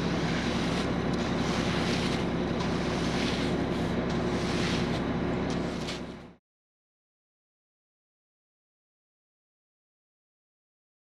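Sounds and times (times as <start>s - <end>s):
engine running: 0.0s - 6.4s.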